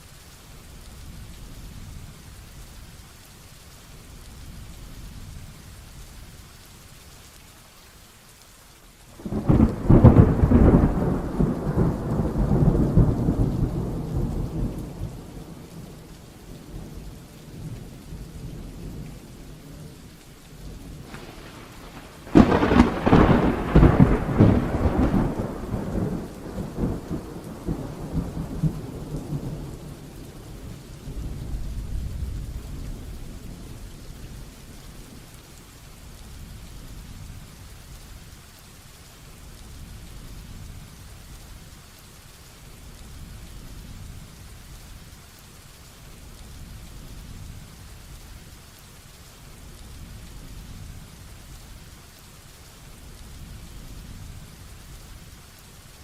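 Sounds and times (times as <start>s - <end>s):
heavy rain: 0.0s - 56.0s
thunderclaps: 9.2s - 17.0s, 20.8s - 35.3s.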